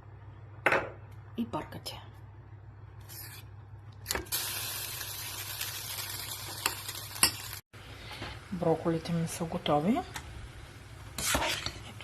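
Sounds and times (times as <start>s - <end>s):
pot boiling hiss: 4.2s - 12.0s.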